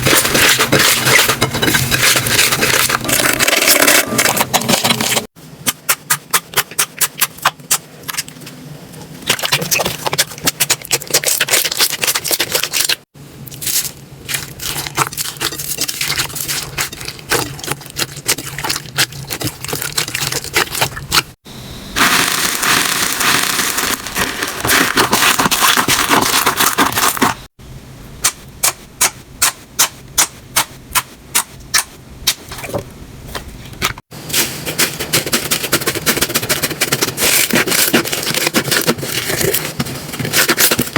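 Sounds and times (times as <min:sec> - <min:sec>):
slime popping and crackling: 0:22.0 - 0:27.5.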